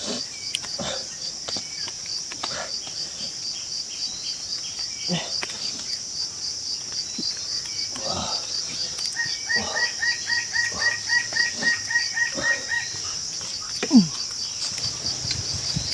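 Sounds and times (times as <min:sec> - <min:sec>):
pulsing insect chorus: 0:00.0 - 0:15.9.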